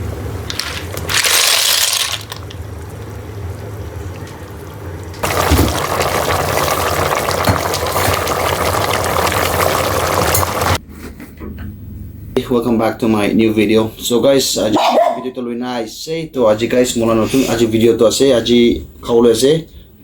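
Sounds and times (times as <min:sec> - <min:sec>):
water pouring: 0:00.5 - 0:10.8.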